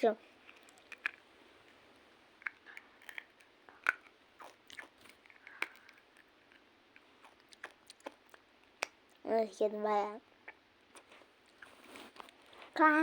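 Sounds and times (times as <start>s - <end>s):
person crunching hard sweet: 2.4s - 8.4s.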